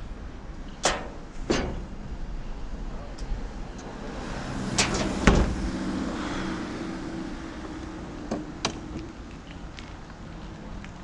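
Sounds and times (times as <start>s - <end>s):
vehicle engine humming: 0.0s - 11.0s
heavy thump: 4.8s - 5.7s.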